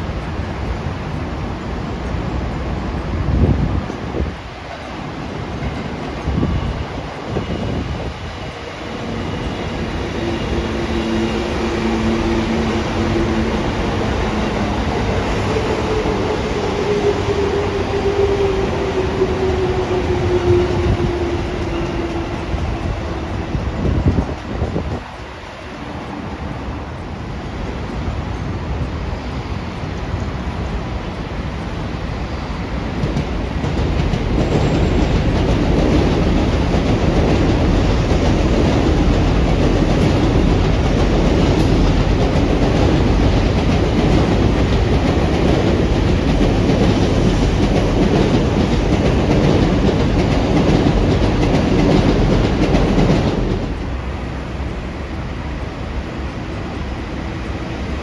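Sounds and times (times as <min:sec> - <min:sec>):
train wheels clattering on rails: 0:00.0 - 0:58.0.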